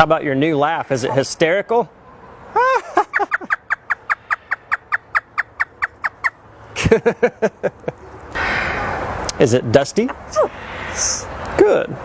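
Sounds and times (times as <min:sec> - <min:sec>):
parrot imitating laughter: 0:02.5 - 0:06.3.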